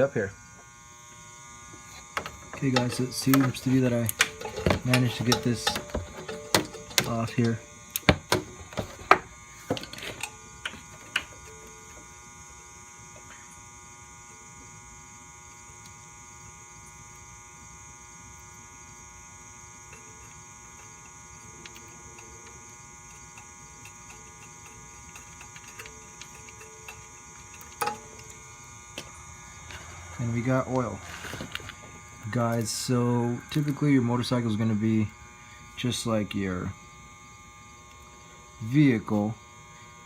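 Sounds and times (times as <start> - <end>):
electrical hum: 0.0 - 40.0
tools clicking on metal: 2.2 - 8.1, 19.9 - 28.4.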